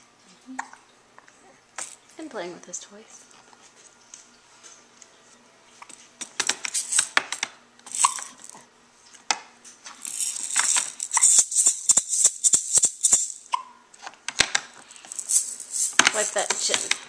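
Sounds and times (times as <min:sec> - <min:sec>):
toy rattle shaken: 0:06.7 - 0:07.2, 0:07.8 - 0:08.6, 0:10.0 - 0:13.6, 0:14.8 - 0:17.0.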